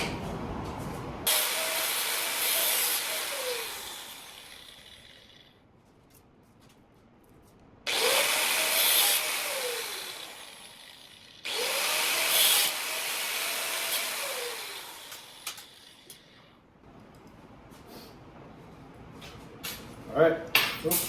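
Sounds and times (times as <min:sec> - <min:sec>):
angle grinder cutting metal: 0:01.3 - 0:05.5, 0:07.9 - 0:16.4.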